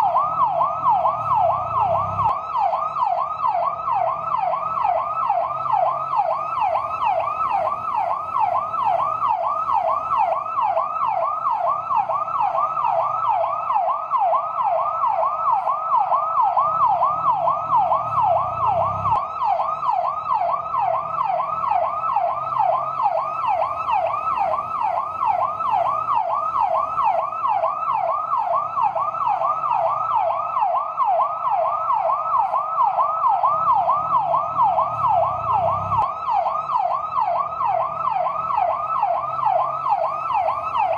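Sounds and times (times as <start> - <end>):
fire truck yelp siren: 0.0 - 40.9.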